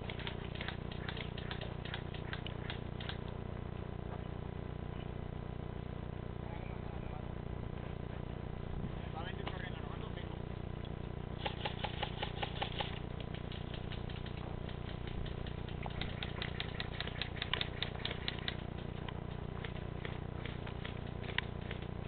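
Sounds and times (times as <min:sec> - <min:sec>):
steady low rumble: 0:00.0 - 0:22.0
airsoft gun clicking shots: 0:11.4 - 0:18.9.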